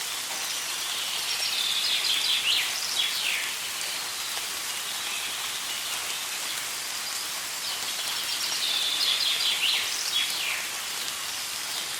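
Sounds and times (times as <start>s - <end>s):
steady rain falling: 0.0s - 11.9s
songbird singing: 0.5s - 11.1s.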